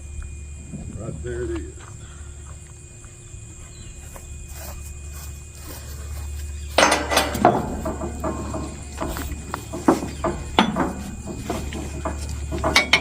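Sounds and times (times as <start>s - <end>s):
low hum: 0.0s - 13.0s
strap ratchet clattering: 6.8s - 13.0s.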